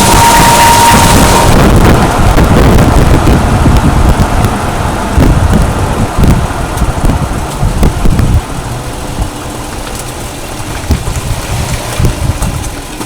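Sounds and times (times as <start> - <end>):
truck drivetrain rumble: 0.0 - 13.0
knocks from drivetrain: 9.2 - 13.0.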